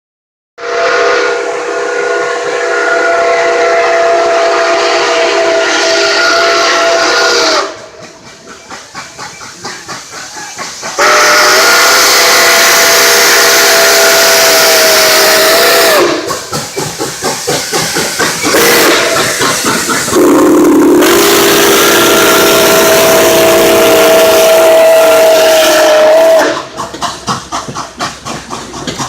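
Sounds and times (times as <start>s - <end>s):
steam locomotive whistle: 0.6s - 7.9s, 11.0s - 16.4s, 18.3s - 26.8s.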